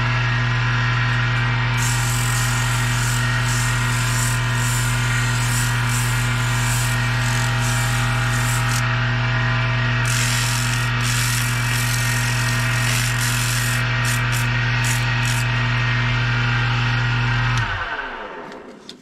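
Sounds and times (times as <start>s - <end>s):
lathe motor humming: 0.0s - 18.4s
sandpaper hissing on metal: 1.8s - 8.8s, 10.0s - 15.5s.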